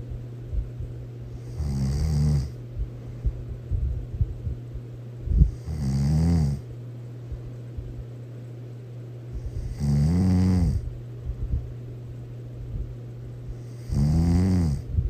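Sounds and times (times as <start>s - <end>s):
steady low hum: 0.0s - 15.0s
person snoring loudly: 1.4s - 2.6s, 5.5s - 6.6s, 9.4s - 10.8s, 13.7s - 14.9s.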